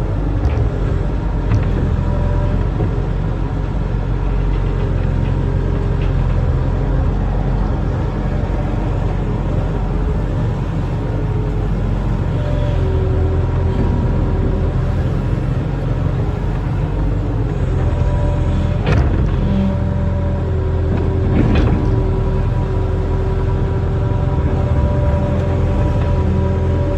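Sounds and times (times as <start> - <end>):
diesel engine running with whine: 0.0 - 26.9.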